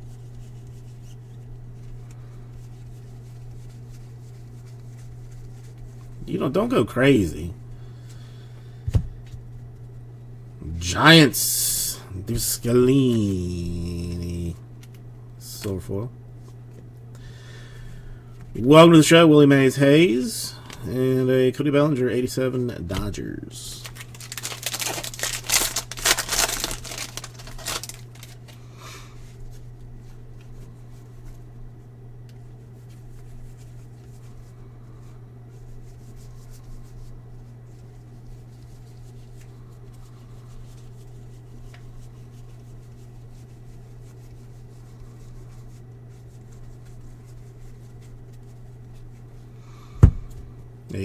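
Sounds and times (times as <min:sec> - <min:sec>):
low steady hum: 0:00.0 - 0:51.0
plastic wrapper crinkling and tearing: 0:23.8 - 0:28.6.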